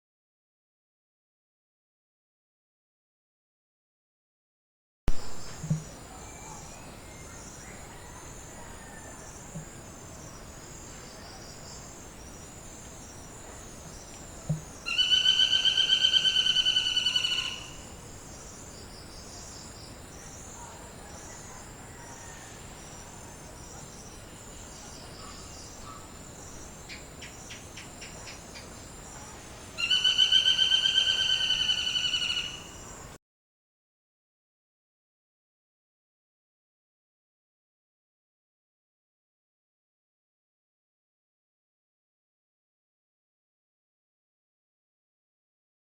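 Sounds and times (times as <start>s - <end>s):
insects chirring: 5.2s - 33.2s
woodpecker calling: 14.5s - 17.8s, 29.8s - 32.7s.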